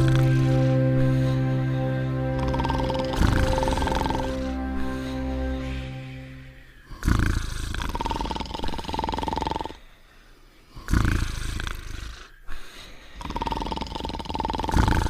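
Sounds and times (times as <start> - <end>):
cartoon snoring with whistle: 10.9 - 12.3, 13.2 - 15.0.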